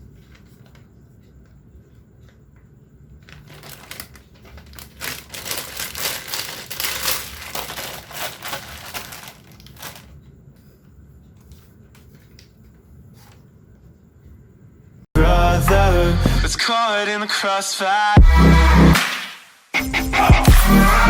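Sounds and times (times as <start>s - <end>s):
plastic packaging crinkling: 3.2s - 10.2s.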